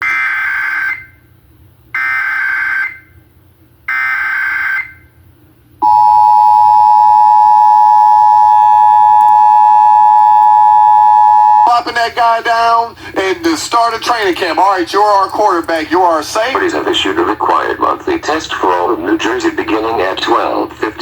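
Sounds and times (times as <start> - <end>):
steady dual-tone beep: 5.8 - 11.8.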